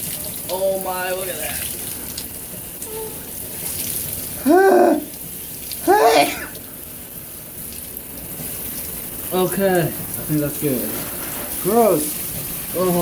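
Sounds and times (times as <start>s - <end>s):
shower water running: 0.0s - 13.0s
voice-like cries: 2.8s - 3.3s, 4.4s - 5.1s, 5.8s - 6.6s.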